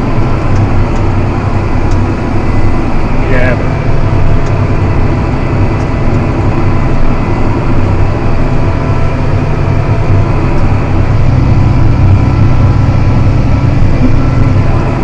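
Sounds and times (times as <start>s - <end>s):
tractor diesel engine under load: 0.0s - 15.0s.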